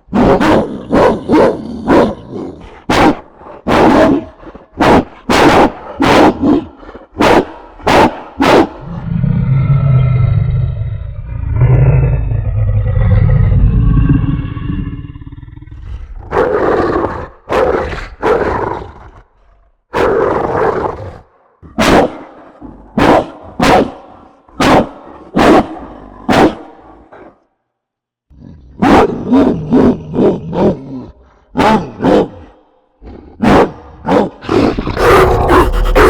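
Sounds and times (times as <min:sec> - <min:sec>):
loud deep barks: 0:00.0 - 0:09.2, 0:16.2 - 0:27.5, 0:28.7 - 0:32.7, 0:33.3 - 0:36.0
deep low growl: 0:08.8 - 0:16.4, 0:34.4 - 0:36.0.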